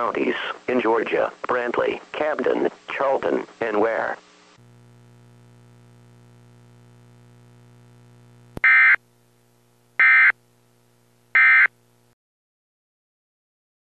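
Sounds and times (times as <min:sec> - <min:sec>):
faint low hum: 0:00.0 - 0:12.2
digital data tone bursts: 0:10.0 - 0:10.3, 0:11.4 - 0:11.7.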